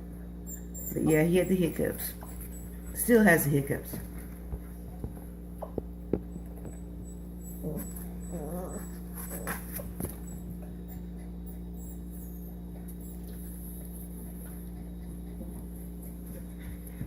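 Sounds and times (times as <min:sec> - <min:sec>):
low electrical hum: 0:00.0 - 0:17.0
puppy whimpering: 0:00.5 - 0:02.8, 0:06.4 - 0:14.1
puppy hiccuping: 0:07.5 - 0:09.4.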